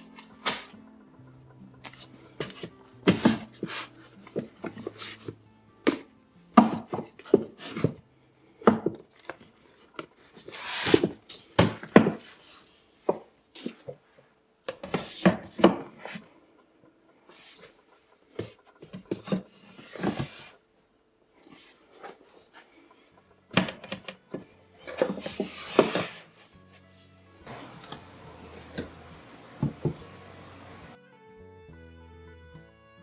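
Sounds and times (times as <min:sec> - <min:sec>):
soft background music: 0:00.0 - 0:12.8, 0:21.5 - 0:33.0.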